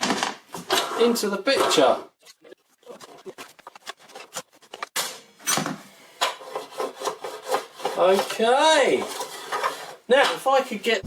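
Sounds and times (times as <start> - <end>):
wooden knocks and clatter: 0.0 - 0.8.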